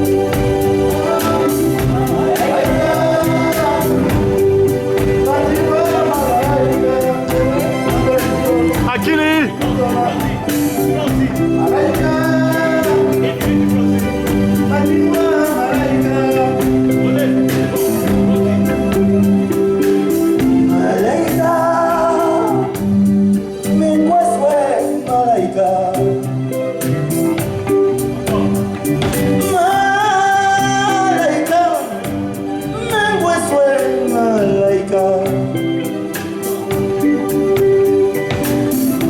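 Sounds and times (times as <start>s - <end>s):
person singing: 0.0s - 27.0s, 28.2s - 39.0s
live band playing: 0.0s - 39.0s
percussion strikes: 26.3s - 33.4s.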